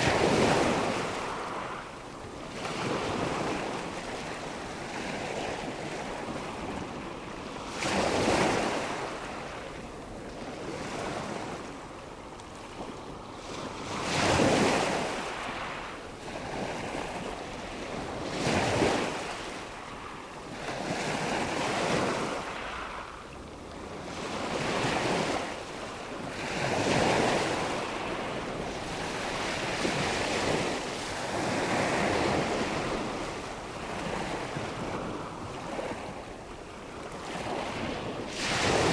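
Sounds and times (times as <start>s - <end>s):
ocean waves breaking: 26.6s - 38.9s.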